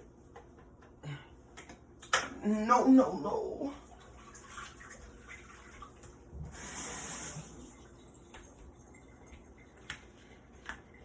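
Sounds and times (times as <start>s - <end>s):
faint kitchen clicks and knocks: 0.0s - 2.4s.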